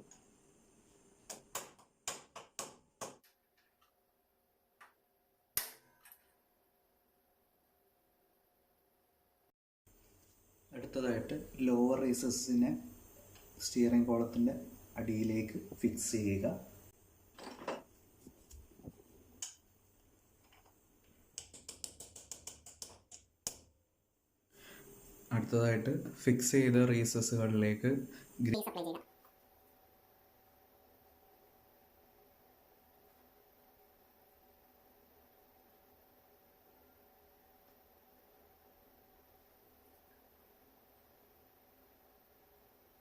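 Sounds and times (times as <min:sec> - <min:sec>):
hammer tapping metal: 0:21.4 - 0:23.6.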